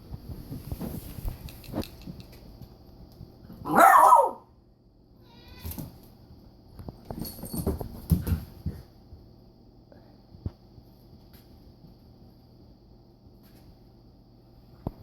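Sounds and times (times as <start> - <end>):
puppy barking: 3.6 - 4.5
knocks and scuffling thumps: 6.9 - 8.9.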